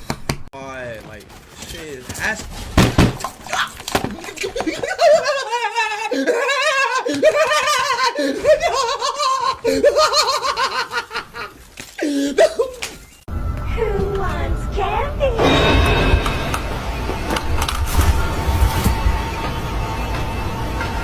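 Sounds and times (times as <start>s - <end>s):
person laughing hard: 4.4s - 12.9s.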